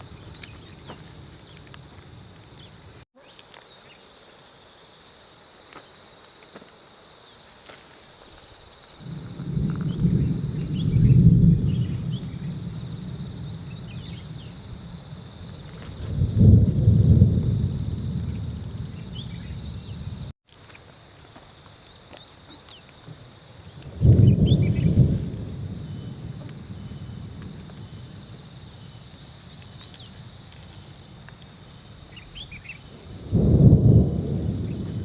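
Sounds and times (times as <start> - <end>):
birds chirping: 0.0 - 4.1, 9.0 - 15.8, 18.0 - 20.3
high insect drone: 0.0 - 35.0
sudden low rumble: 9.0 - 20.3.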